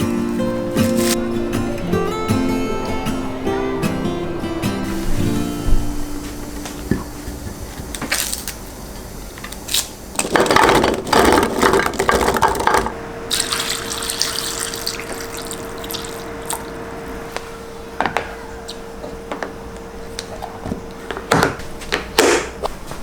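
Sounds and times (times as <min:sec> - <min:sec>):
steady hum: 0:00.0 - 0:23.0
tap running into sink: 0:05.1 - 0:08.6
handling clicks and knocks: 0:10.2 - 0:13.0.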